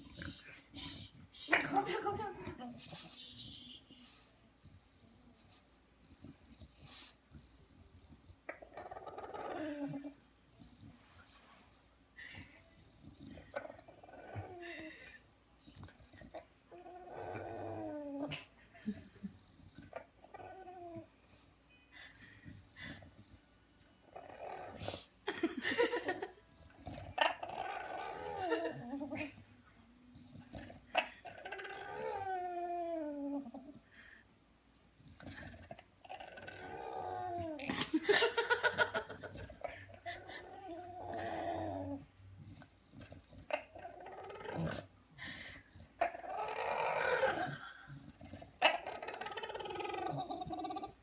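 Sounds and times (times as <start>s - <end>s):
dog moaning: 7.9s - 10.2s, 16.1s - 18.5s, 19.6s - 21.1s, 26.7s - 29.5s, 30.2s - 33.8s, 35.1s - 44.9s, 45.8s - 51.0s.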